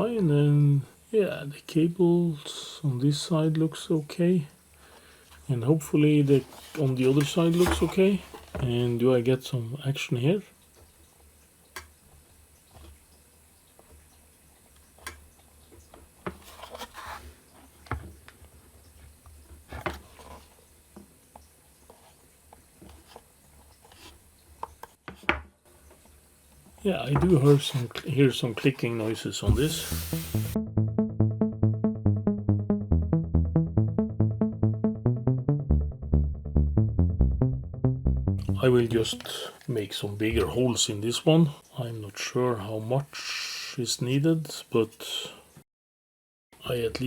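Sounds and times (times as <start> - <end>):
bass line: 29.5 - 39.3, 40.3 - 40.8
pulsing synth notes: 29.8 - 39.2.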